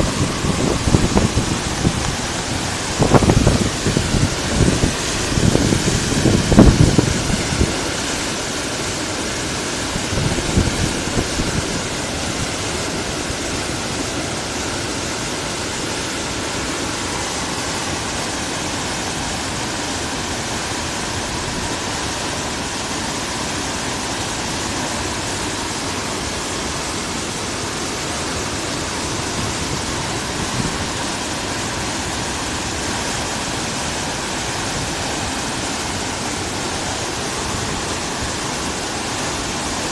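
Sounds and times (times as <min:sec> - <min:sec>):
wind buffeting microphone: 0:00.0 - 0:08.5, 0:09.8 - 0:13.0, 0:29.0 - 0:31.3
river water rushing: 0:00.0 - 0:39.9.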